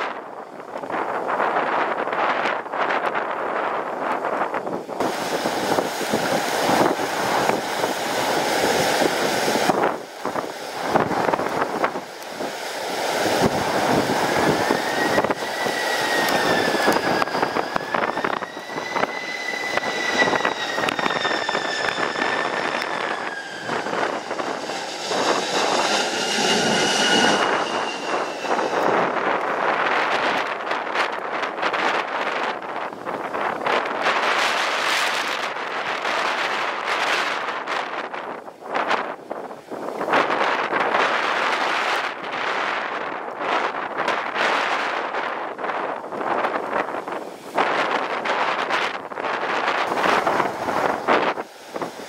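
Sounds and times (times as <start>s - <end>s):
gusty wind buffeting microphone: 0.0s - 52.0s
jet engines whining: 5.0s - 30.7s, 49.8s - 52.0s.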